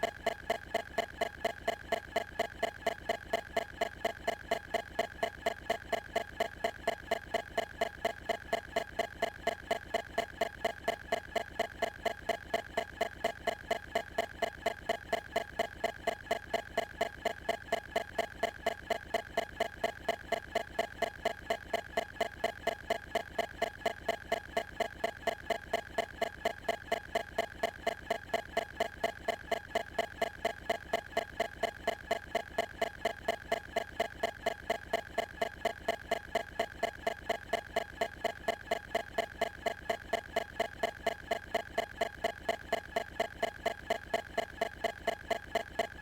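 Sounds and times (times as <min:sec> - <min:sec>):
constant high-pitched tone: 0:00.0 - 0:46.0
rapid even ticking: 0:00.0 - 0:46.0.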